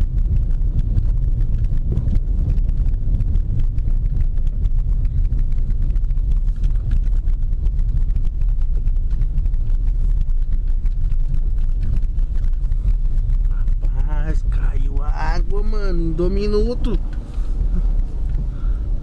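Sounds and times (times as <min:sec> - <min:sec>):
rapid small clicks: 0:00.0 - 0:15.7
tyres rumbling on cobblestones: 0:00.0 - 0:19.0.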